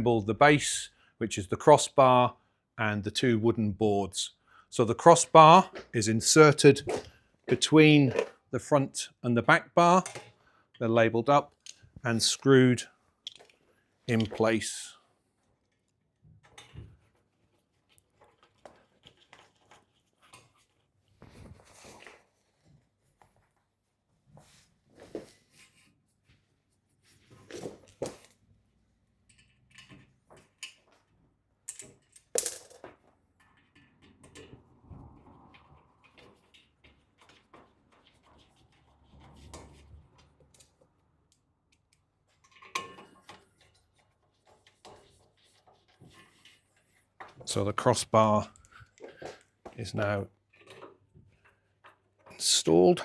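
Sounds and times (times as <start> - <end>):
bed frame parts clicking and knocking: 6.6 - 8.4, 9.8 - 10.9, 16.4 - 17.2, 29.2 - 47.6, 48.7 - 52.4.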